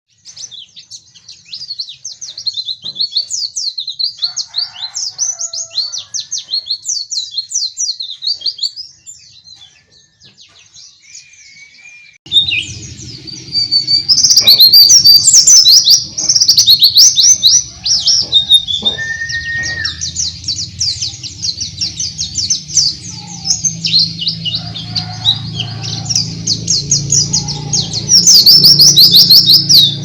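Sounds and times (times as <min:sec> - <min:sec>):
low hum: 0:12.3 - 0:30.0
songbird warbling: 0:12.3 - 0:30.0.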